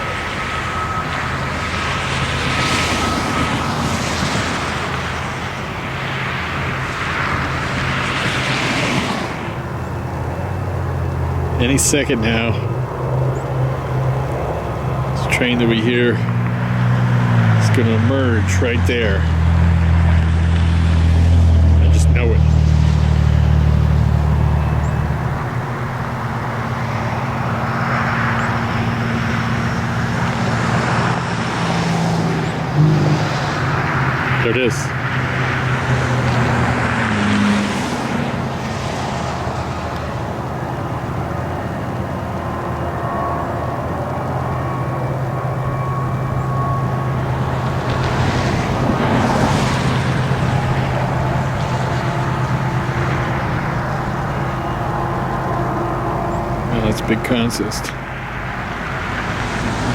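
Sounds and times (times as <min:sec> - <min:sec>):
diesel locomotive engine drone: 0:00.0 - 0:59.9
freight train rumble: 0:00.0 - 0:59.9
low hum: 0:34.8 - 0:59.9.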